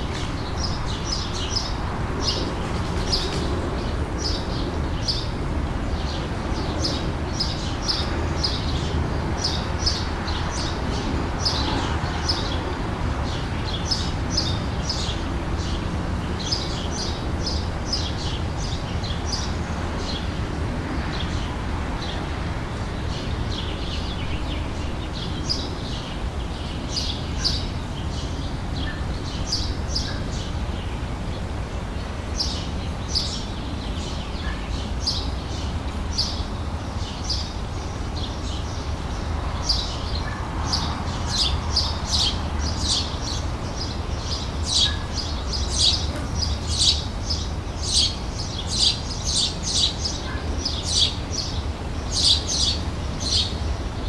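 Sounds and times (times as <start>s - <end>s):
small birds chirping: 0.0s - 54.0s.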